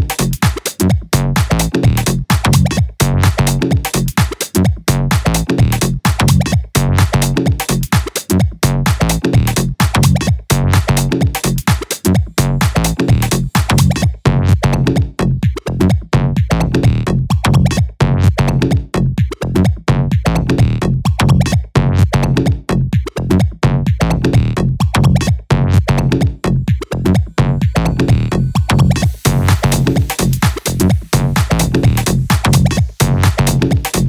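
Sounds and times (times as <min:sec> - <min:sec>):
electronic club music: 0:00.0 - 0:19.8, 0:24.8 - 0:34.0.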